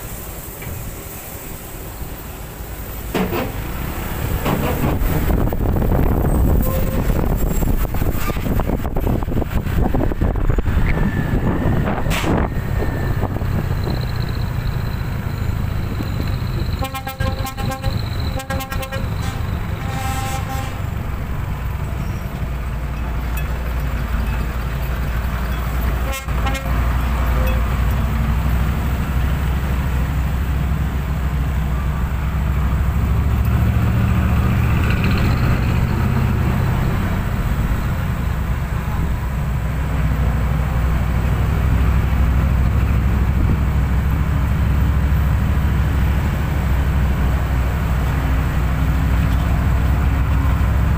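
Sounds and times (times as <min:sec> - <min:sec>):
diesel trucks rumbling past: 0:00.0 - 0:50.9
truck horn toots: 0:06.5 - 0:07.3, 0:16.6 - 0:20.9, 0:26.0 - 0:27.6.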